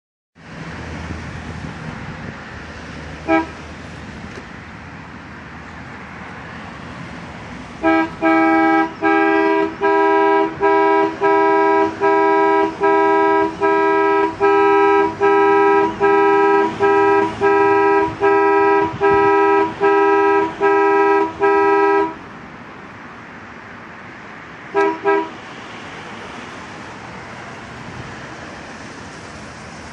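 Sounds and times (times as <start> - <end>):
car horn toot: 3.2 - 3.6, 7.8 - 22.2, 24.7 - 25.4
two-pitch car horn blasts: 3.2 - 3.6, 7.8 - 22.2, 24.7 - 25.4.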